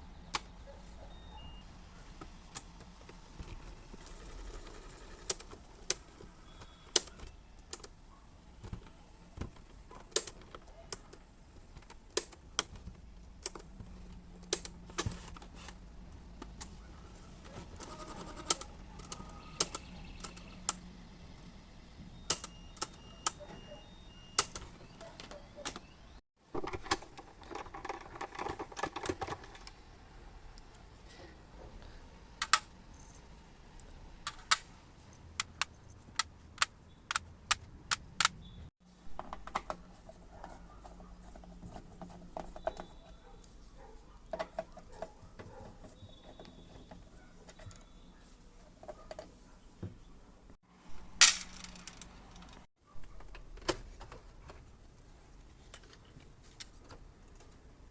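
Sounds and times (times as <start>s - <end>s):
small metal parts rattling: 51.0s - 52.7s.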